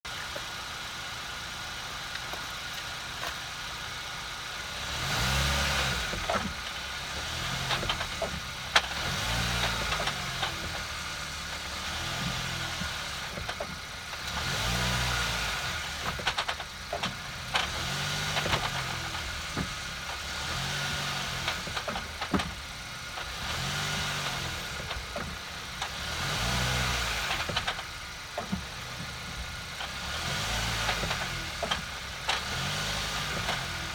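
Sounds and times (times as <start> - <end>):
car engine idling and revving: 0.0 - 33.9
sharp engine knocking ticks: 16.0 - 20.3, 26.8 - 33.9.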